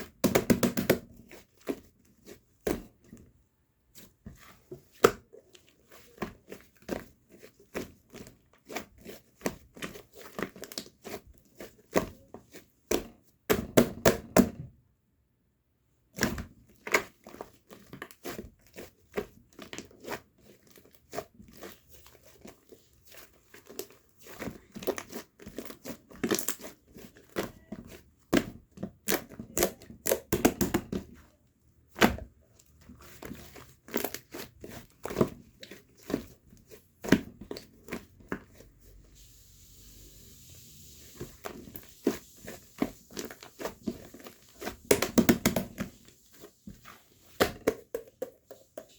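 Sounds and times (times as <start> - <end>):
slime squished by hand: 41.1 - 47.9.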